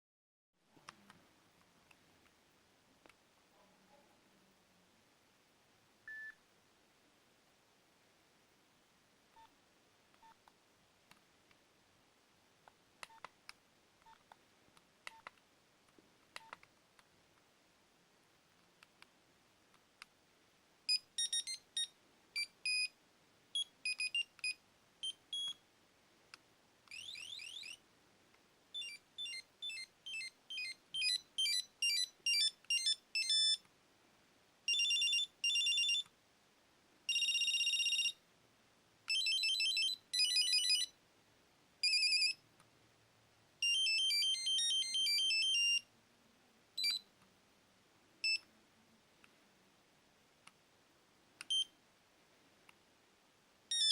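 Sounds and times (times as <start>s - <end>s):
monophonic phone ringtones: 21.2s - 22.9s, 26.9s - 27.8s, 28.8s - 33.6s, 34.7s - 36.0s, 37.1s - 38.2s, 39.1s - 40.9s, 43.6s - 45.8s.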